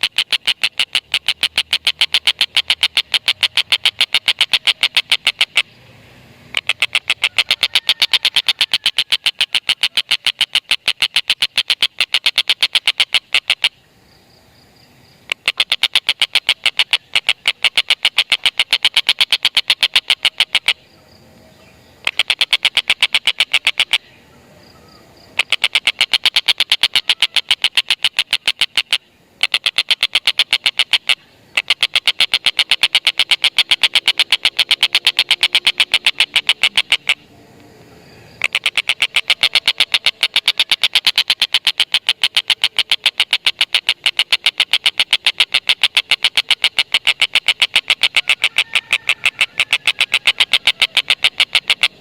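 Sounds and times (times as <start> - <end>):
kingfisher chattering call: 0.0 - 5.8, 6.5 - 13.7, 22.0 - 24.1, 24.9 - 37.2, 38.3 - 52.0.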